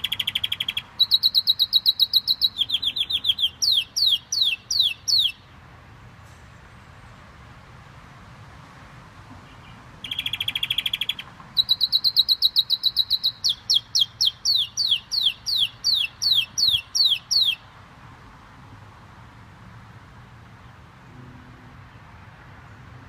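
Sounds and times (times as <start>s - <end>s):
canary singing trills: 0.0s - 5.6s, 9.5s - 17.7s.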